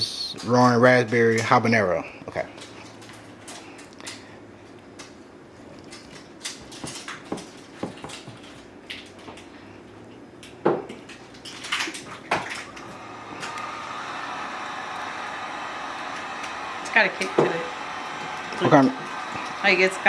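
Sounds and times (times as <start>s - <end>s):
dishes clicking and knocking: 6.0s - 8.6s.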